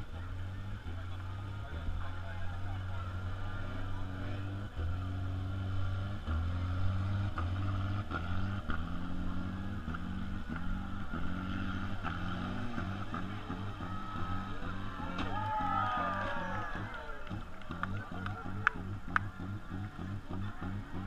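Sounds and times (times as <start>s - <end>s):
car engines revving: 0.0s - 21.0s.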